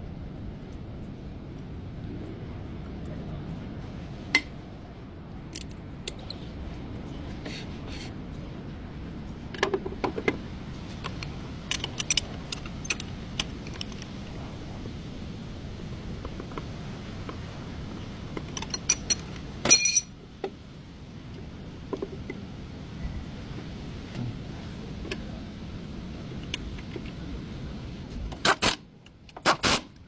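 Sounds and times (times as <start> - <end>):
low background hum: 0.0 - 30.0
metal tools clinking: 18.6 - 20.1.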